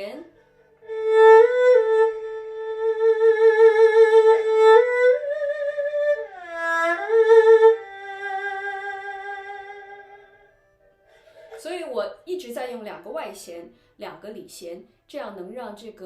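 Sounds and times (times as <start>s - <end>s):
erhu melody: 0.0s - 11.6s.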